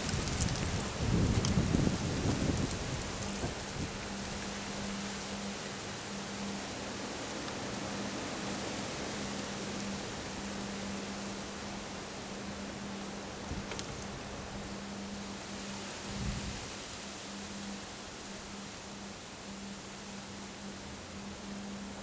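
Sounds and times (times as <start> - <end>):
wind buffeting microphone: 0.0 - 5.3, 16.0 - 16.8
rain hiss: 0.0 - 22.0.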